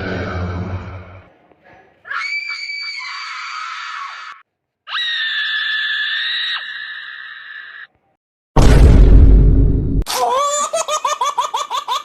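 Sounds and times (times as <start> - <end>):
shrill high-pitched screams: 2.1 - 8.0.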